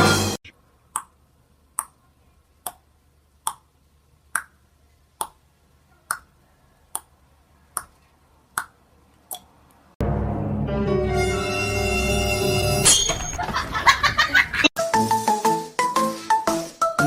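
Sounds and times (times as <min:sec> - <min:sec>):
background music: 0:10.0 - 0:13.0, 0:14.8 - 0:17.0.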